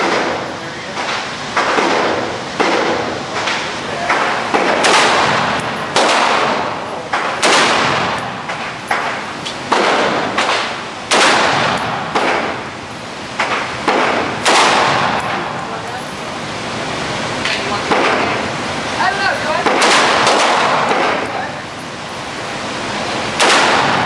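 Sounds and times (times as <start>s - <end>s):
rifle shots with echo: 0.0s - 12.7s, 13.4s - 15.5s, 17.9s - 18.4s, 19.6s - 21.5s, 23.4s - 24.0s.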